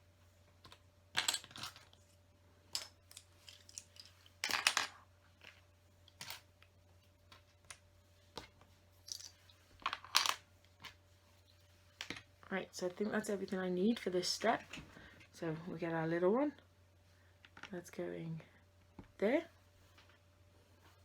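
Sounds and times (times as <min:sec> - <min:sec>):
plastic bricks clicking and rattling: 0:02.7 - 0:05.6.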